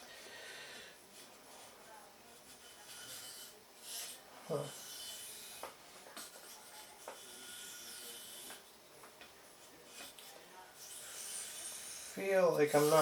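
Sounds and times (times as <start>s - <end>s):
knife scraping on whetstone: 2.5s - 8.6s.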